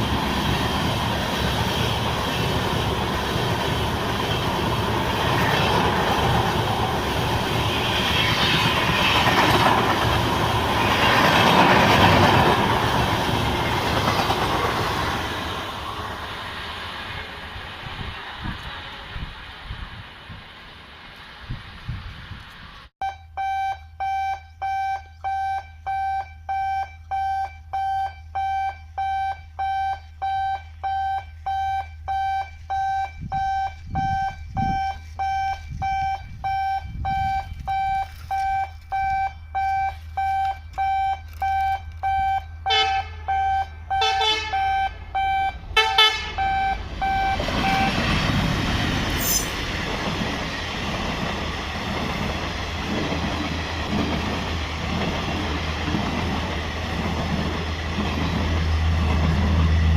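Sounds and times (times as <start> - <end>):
train rumble: 0.0 - 22.9, 24.0 - 59.9
electronic warning alarm beeping: 23.0 - 48.1
train horn blasts: 42.2 - 48.0.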